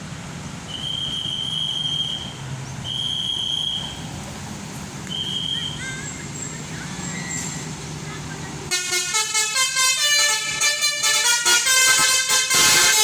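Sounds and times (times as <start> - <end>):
vehicle engine rumbling: 0.0 - 13.0
high-pitched whistle blasts: 0.7 - 4.0, 5.1 - 5.8.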